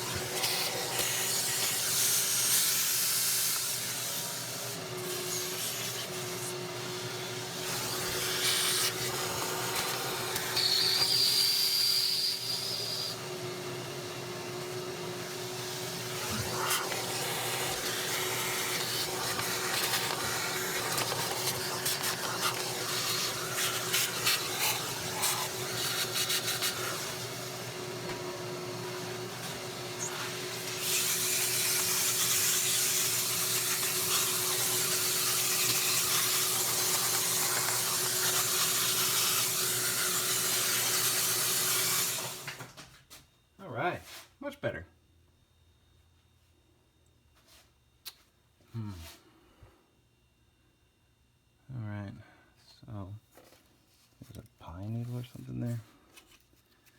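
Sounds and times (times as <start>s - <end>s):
vacuum cleaner running: 0.0s - 42.8s.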